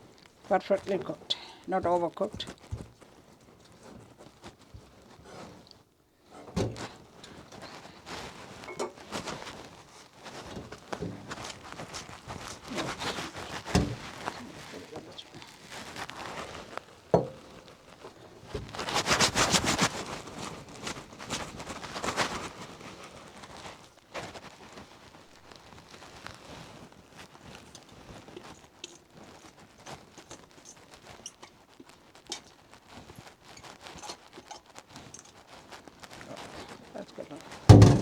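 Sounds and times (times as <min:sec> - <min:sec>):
sharp knock: 0:37.7 - 0:38.0.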